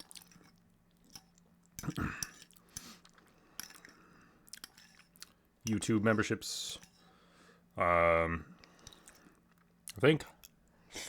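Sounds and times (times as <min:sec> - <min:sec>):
person chewing food: 0:00.0 - 0:05.5, 0:08.6 - 0:10.8.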